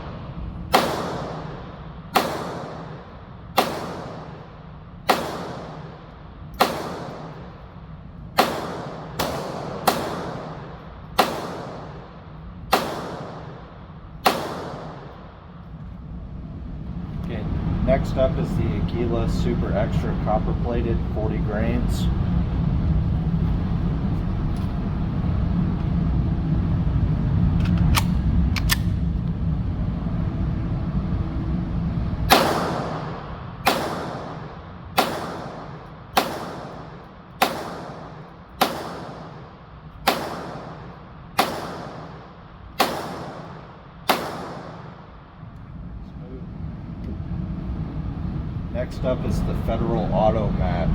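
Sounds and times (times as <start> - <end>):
low rumble: 0.0 - 50.9
pistol shots with echo: 0.7 - 7.7, 8.3 - 15.4, 32.3 - 45.3.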